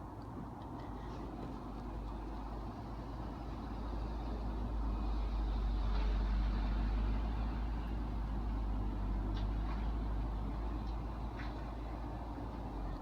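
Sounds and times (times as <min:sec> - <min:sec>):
vehicle rumbling past: 0:02.8 - 0:10.8.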